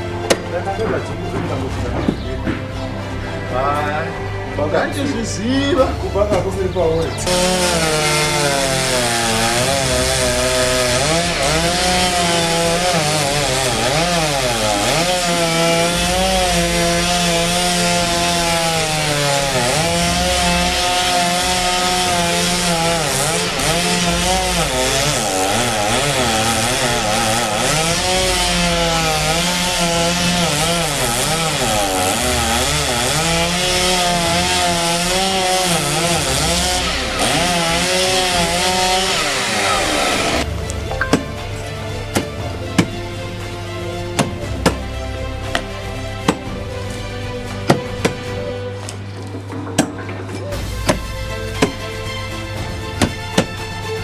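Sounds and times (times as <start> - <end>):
chainsaw cutting wood: 6.4 - 54.0.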